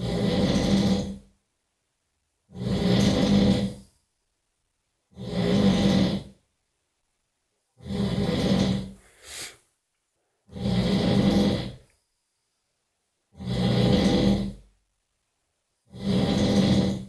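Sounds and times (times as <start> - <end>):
person snoring: 0.0 - 1.2, 2.5 - 3.9, 5.1 - 6.4, 7.8 - 9.6, 10.5 - 11.9, 13.3 - 14.6, 15.9 - 17.0.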